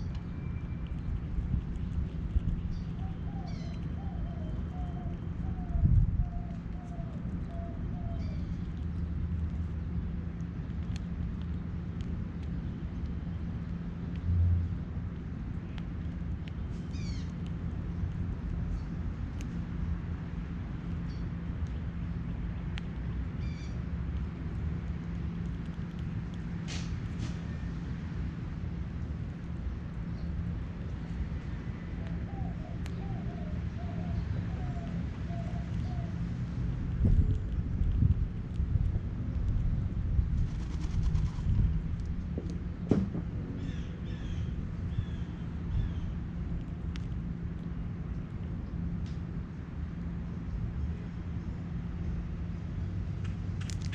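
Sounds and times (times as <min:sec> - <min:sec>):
faint bird chips: 0:00.0 - 0:10.1, 0:15.6 - 0:17.5, 0:23.4 - 0:23.8
vehicle engine rumble: 0:00.0 - 0:53.9
dove cooing: 0:32.2 - 0:36.2.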